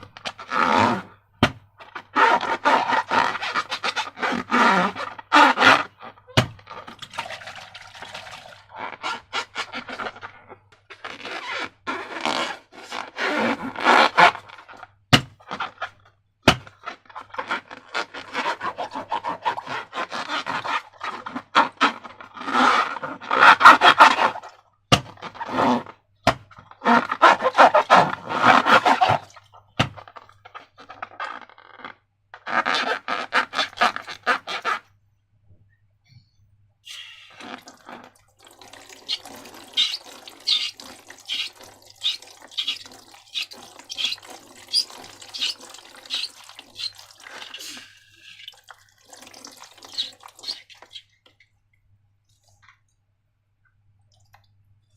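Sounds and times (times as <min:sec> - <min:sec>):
wet slime squelching: 0:36.9 - 0:51.5.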